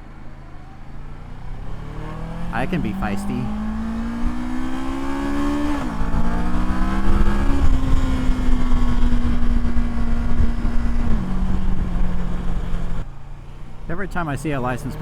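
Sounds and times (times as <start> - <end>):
motorcycle engine shifting gears: 0.0 - 15.0
riding wind rush: 2.5 - 12.8.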